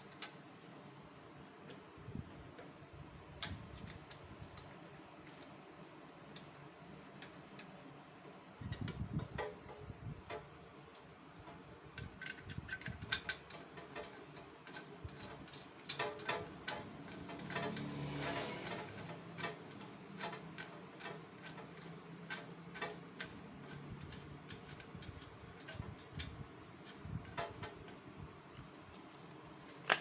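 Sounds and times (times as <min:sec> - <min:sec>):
hand tools clicking on metal: 0:10.3 - 0:28.0.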